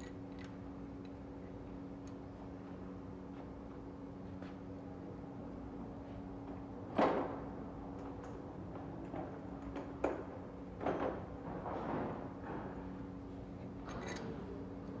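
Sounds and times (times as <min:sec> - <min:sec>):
steady low hum: 0:00.0 - 0:15.0
tools and engine parts clattering: 0:13.8 - 0:14.6.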